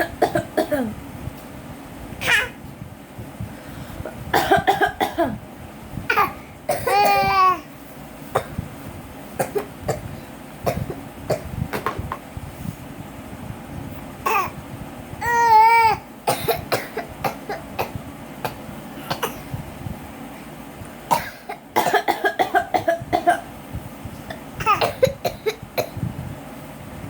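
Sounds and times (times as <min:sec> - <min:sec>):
child coughing: 0:00.0 - 0:01.0, 0:02.2 - 0:02.6, 0:04.3 - 0:05.4, 0:06.1 - 0:07.7, 0:08.4 - 0:08.6, 0:09.4 - 0:10.1, 0:10.7 - 0:11.5, 0:14.2 - 0:14.6, 0:15.2 - 0:19.6, 0:21.1 - 0:23.5, 0:24.3 - 0:26.0
woman coughing: 0:00.0 - 0:01.0, 0:04.3 - 0:05.4, 0:06.1 - 0:07.3, 0:16.3 - 0:19.5, 0:21.1 - 0:23.5, 0:24.3 - 0:26.0.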